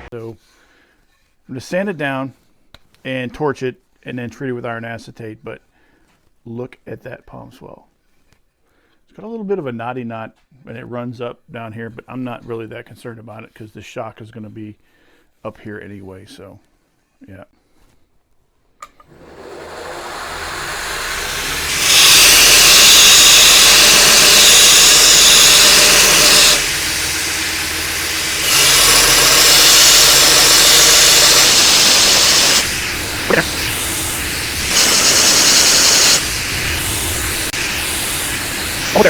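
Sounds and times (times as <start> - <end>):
abrasive grinding of wood: 19.1 - 39.0
belt grinder motor running: 19.1 - 39.0.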